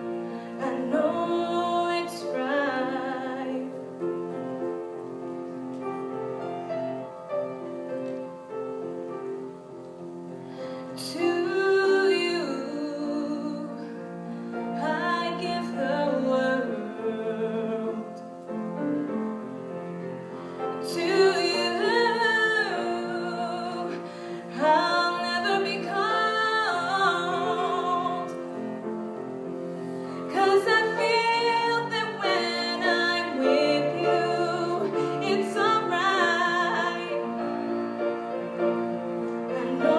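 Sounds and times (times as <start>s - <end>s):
piano accompaniment: 0.0s - 39.9s
woman singing: 0.6s - 3.9s, 11.0s - 14.0s, 14.6s - 18.2s, 20.8s - 28.7s, 30.2s - 38.0s, 39.5s - 39.9s.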